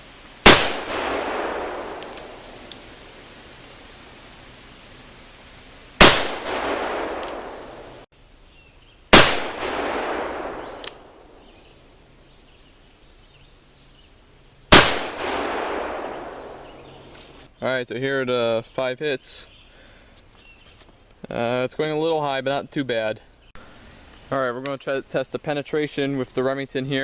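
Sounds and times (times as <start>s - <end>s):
revolver shots with echo: 0.5s - 2.7s, 6.0s - 8.0s, 9.2s - 11.5s, 14.7s - 17.1s.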